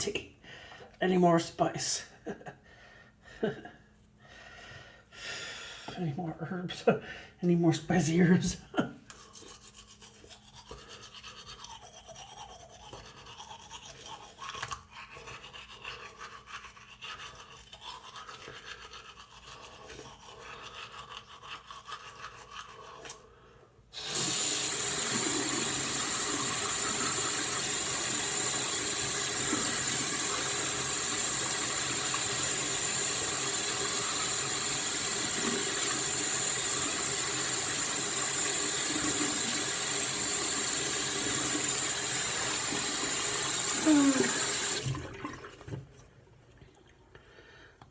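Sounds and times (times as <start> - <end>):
toothbrush scrubbing teeth: 9.0 - 44.8
water running from tap: 24.0 - 45.8.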